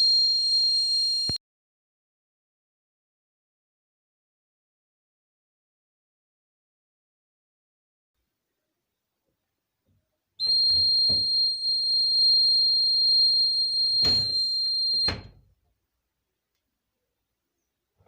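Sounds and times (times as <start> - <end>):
high-pitched alarm buzzer: 10.4 - 15.4.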